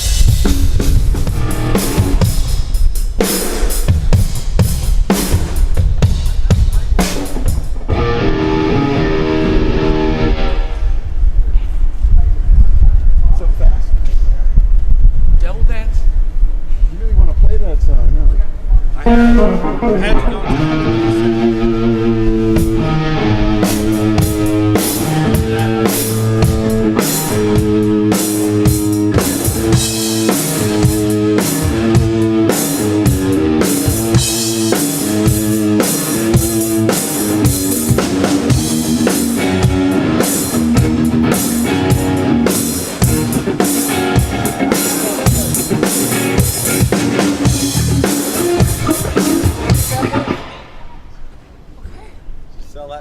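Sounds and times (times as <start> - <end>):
drum kit playing: 0.0 - 10.5, 19.1 - 50.8
electric guitars and bass riff: 0.0 - 11.8, 18.8 - 51.0.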